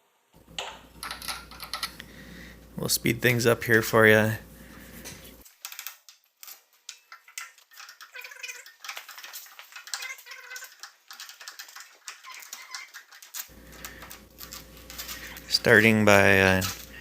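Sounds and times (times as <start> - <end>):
metallic clicks and clatter: 0.6 - 2.0, 5.4 - 15.4.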